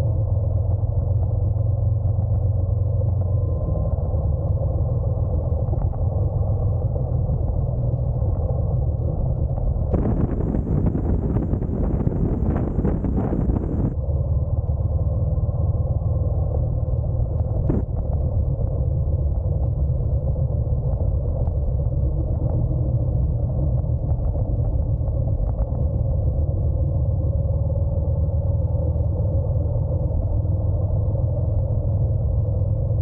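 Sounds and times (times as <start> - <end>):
motorcycle engine rumble: 0.0 - 33.0
road noise: 0.0 - 33.0
wind hiss on microphone: 9.9 - 14.0.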